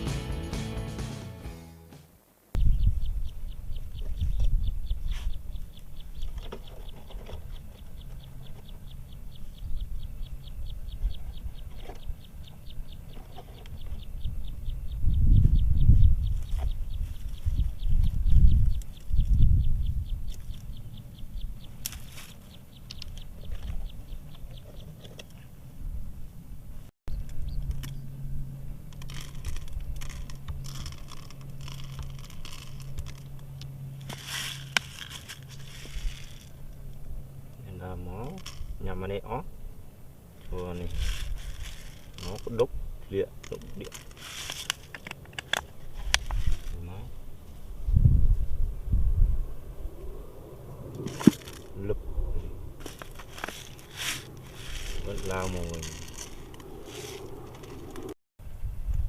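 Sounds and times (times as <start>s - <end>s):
steady low hum: 2.5s - 59.0s
scraping and scratching: 21.8s - 23.9s, 28.9s - 36.9s, 38.2s - 38.9s, 40.4s - 47.1s, 51.0s - 51.9s, 52.8s - 58.2s
low rumble: 45.9s - 59.0s.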